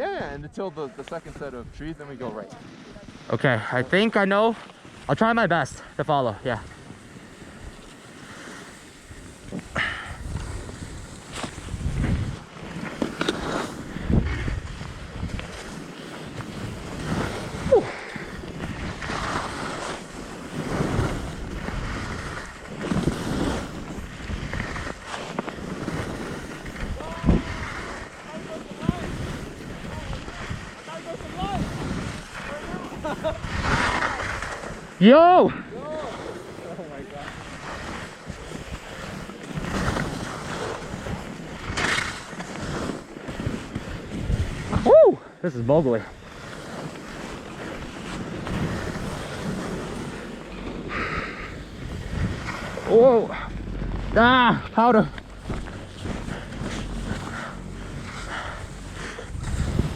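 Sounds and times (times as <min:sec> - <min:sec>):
skis scraping over snow: 0:00.0 - 0:59.9
wind buffeting microphone: 0:09.0 - 0:12.5, 0:13.8 - 0:15.9, 0:16.5 - 0:35.0, 0:43.3 - 0:45.0, 0:46.1 - 0:59.9.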